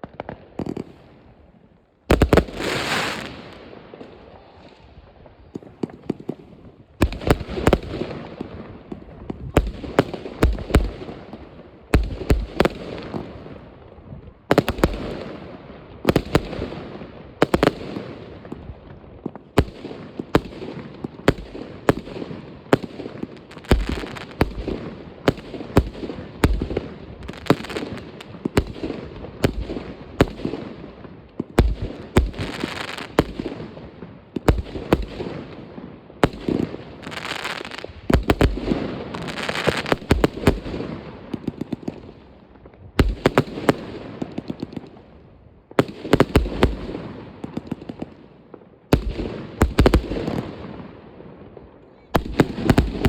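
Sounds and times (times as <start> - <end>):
fireworks popping and crackling: 0.0 - 1.4, 2.1 - 53.0
fireworks banging: 52.2 - 53.0.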